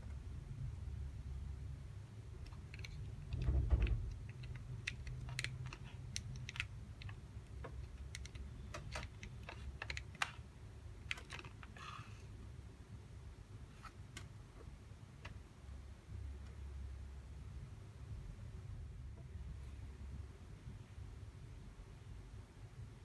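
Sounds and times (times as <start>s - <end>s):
plastic parts clicking: 2.4s - 10.4s, 11.0s - 11.9s.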